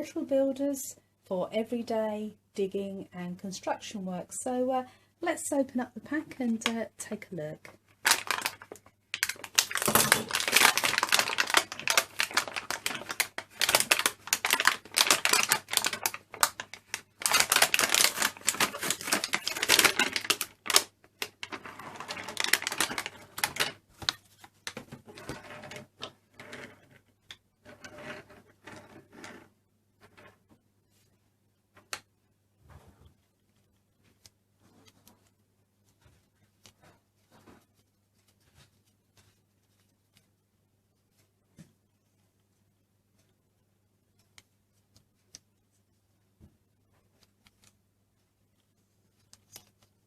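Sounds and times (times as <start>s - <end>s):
packaging crackling and clicking: 8.0s - 25.9s.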